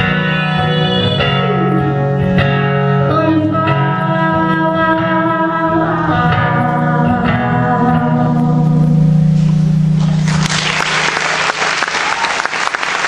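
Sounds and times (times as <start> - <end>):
wordless sliding singing: 0.0 - 2.0, 3.1 - 9.7.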